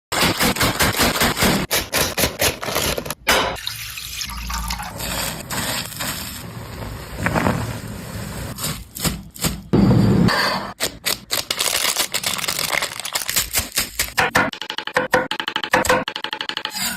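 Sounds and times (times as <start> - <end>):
water pouring and running: 3.6 - 8.5.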